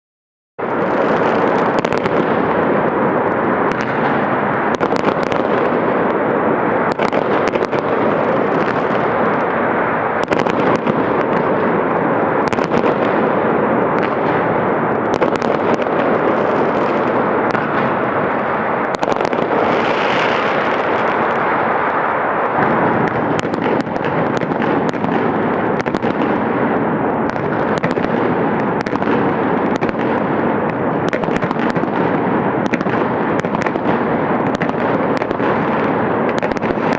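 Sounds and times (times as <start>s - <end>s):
firecrackers crackling: 0.6s - 36.9s
loud firework bangs: 0.6s - 36.9s.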